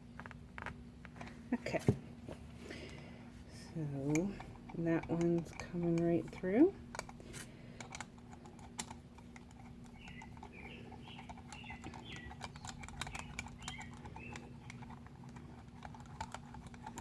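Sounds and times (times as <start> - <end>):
steady low hum: 0.0 - 17.0
metal parts clicking and tapping: 3.8 - 17.0
bird chirping: 9.8 - 14.9.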